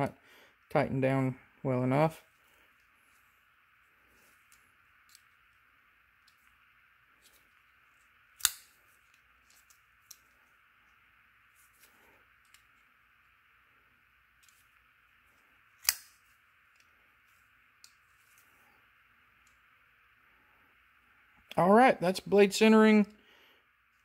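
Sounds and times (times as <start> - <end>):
small handling clicks: 4.4 - 5.4, 12.4 - 12.8, 15.8 - 17.0
knife blade snapping into place: 8.4 - 8.6.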